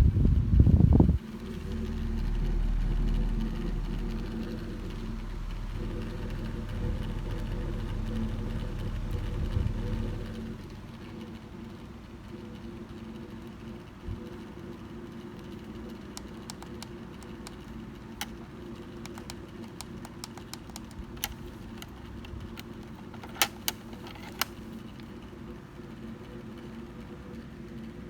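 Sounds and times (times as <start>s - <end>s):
air conditioner humming: 0.0s - 28.0s
light clicks: 16.1s - 24.7s.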